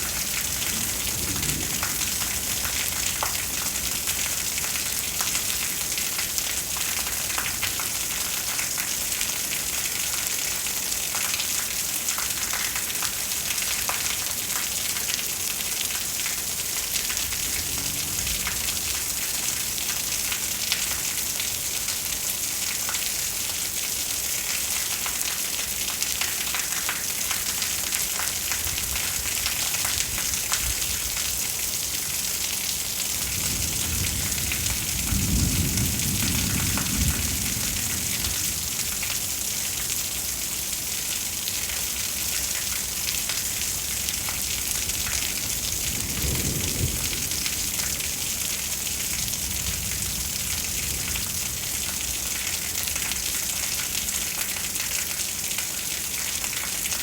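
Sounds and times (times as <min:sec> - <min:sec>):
thunder rumbling: 0:00.0 - 0:04.6, 0:17.0 - 0:19.7, 0:33.2 - 0:39.1, 0:44.4 - 0:52.4
steady rain: 0:00.0 - 0:57.0.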